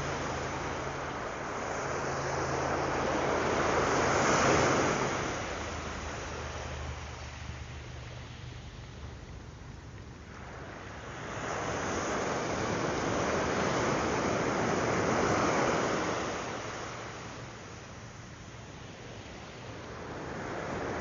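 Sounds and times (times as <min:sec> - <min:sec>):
wave breaking on sandy beach: 0:00.0 - 0:08.7, 0:10.2 - 0:21.0.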